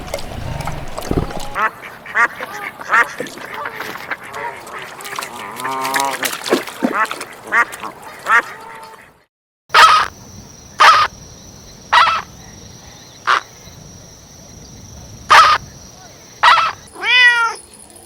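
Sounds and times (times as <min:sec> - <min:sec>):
ducks quacking: 0:00.0 - 0:09.2, 0:15.3 - 0:15.6, 0:16.4 - 0:16.8
cat meowing: 0:17.0 - 0:17.6.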